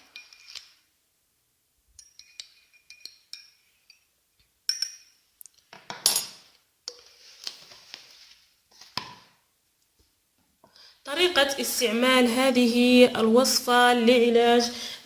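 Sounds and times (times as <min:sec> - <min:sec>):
spoon clinking in cup: 0:02.0 - 0:04.1, 0:04.7 - 0:05.2.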